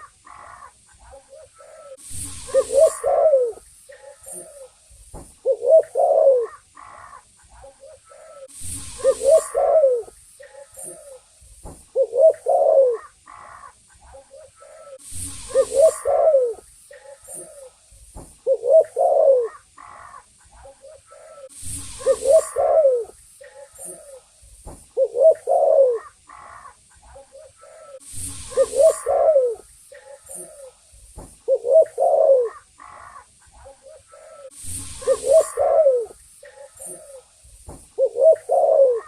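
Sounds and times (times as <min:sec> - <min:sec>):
dove cooing: 0:00.0 - 0:11.3, 0:11.9 - 0:17.8, 0:18.4 - 0:24.3, 0:24.9 - 0:30.8, 0:31.4 - 0:37.3, 0:38.0 - 0:39.0.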